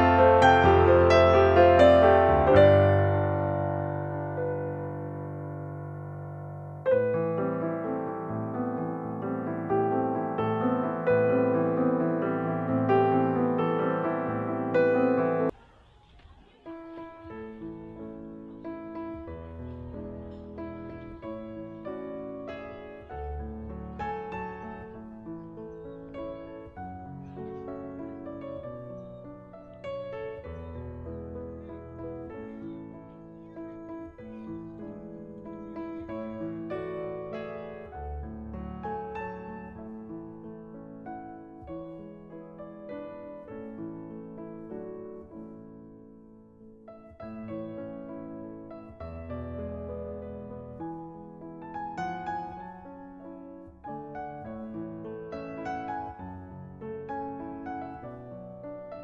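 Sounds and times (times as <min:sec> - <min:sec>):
keyboard playing slow chords: 0:00.0 - 0:15.5
piano playing sustained chords: 0:00.0 - 0:15.5, 0:17.6 - 0:59.0.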